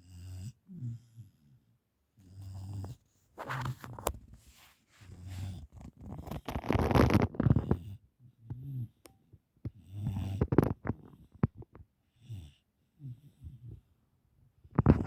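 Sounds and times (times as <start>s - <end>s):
dog snoring: 0.0s - 1.5s, 2.2s - 3.7s, 5.1s - 9.0s, 9.7s - 13.9s, 14.7s - 15.0s.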